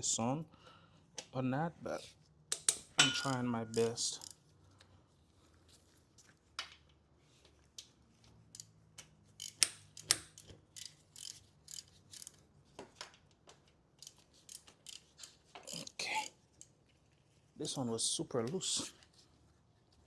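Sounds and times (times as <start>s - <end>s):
socket ratchet clicking: 2.5s - 4.4s, 8.6s - 12.4s, 14.0s - 16.0s.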